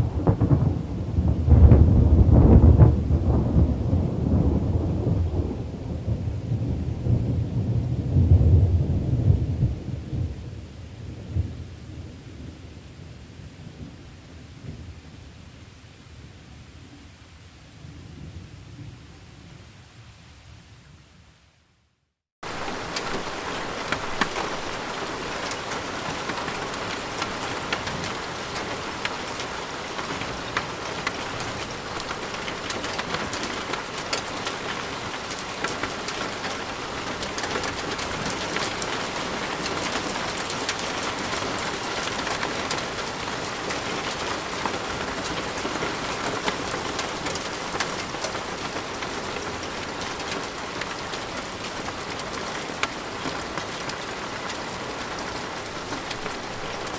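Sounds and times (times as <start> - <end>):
heavy rain hiss: 22.4 - 56.9
raindrops clicking close by: 22.4 - 56.9.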